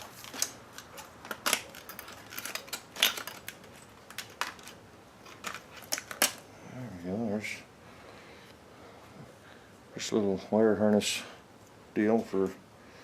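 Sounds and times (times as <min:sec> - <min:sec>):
metal and plastic parts clicking: 0:00.2 - 0:06.4.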